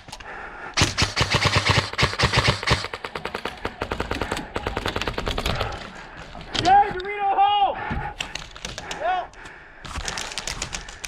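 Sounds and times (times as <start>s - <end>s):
airsoft rifle full-auto fire: 0.8s - 3.4s.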